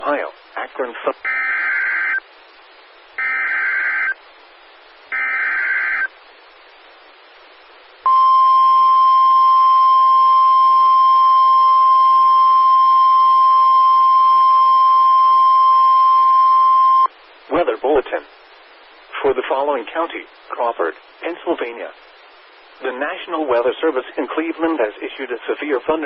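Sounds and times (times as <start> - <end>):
single-pitch warning alarm tone: 3.2 - 4.2, 5.1 - 6.1, 8.1 - 17.1.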